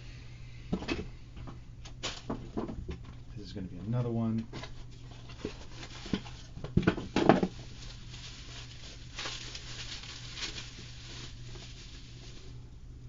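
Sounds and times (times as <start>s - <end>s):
packaging rustling: 5.1s - 12.6s.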